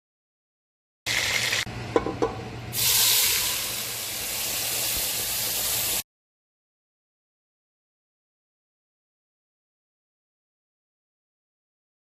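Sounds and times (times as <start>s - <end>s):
food sizzling in hot oil: 1.1s - 1.7s, 2.7s - 6.0s.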